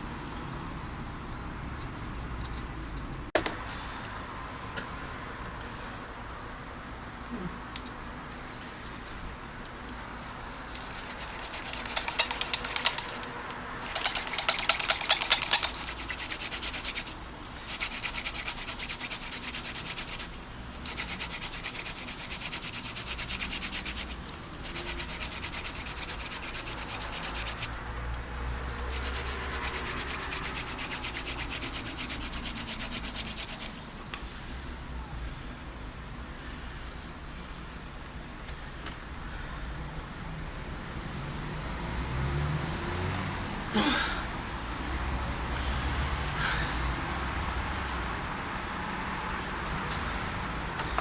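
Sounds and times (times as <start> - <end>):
hand drill spindle rubbing wood: 10.6 - 27.8, 28.9 - 33.8.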